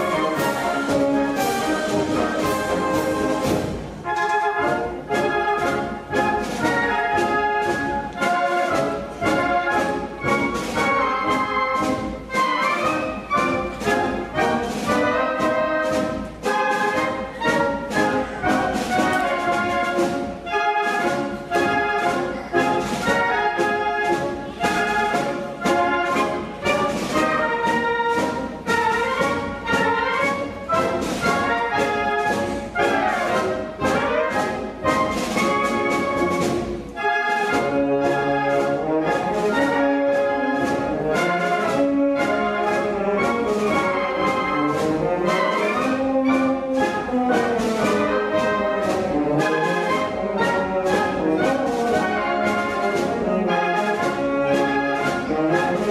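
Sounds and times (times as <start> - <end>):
orchestral music with brass: 0.0 - 55.9.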